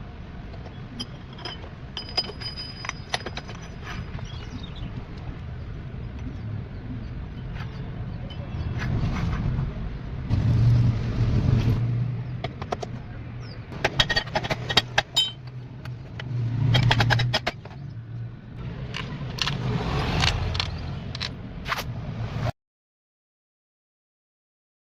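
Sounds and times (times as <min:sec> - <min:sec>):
sharp metallic clicks and rattles: 0:00.4 - 0:05.4, 0:12.3 - 0:18.2, 0:18.8 - 0:21.4.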